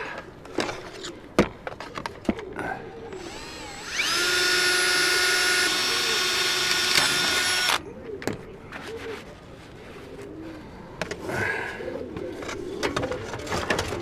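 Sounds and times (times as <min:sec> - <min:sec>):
electric drill whine: 0:03.2 - 0:07.8.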